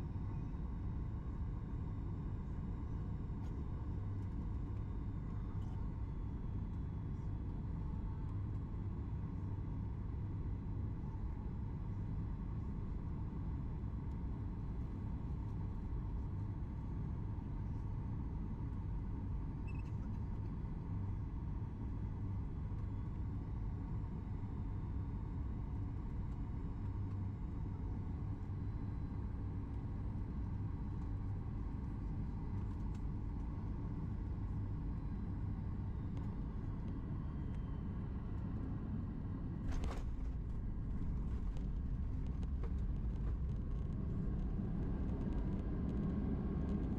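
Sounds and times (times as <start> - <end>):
airplane cabin rumble: 0.0 - 46.9
jet engine whine: 26.2 - 46.9.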